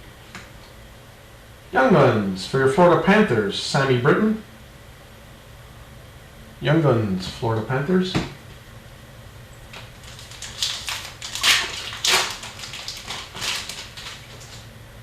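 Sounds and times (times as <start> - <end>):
low steady hum: 0.0 - 15.0
trading cards rustling and crinkling: 9.7 - 14.7.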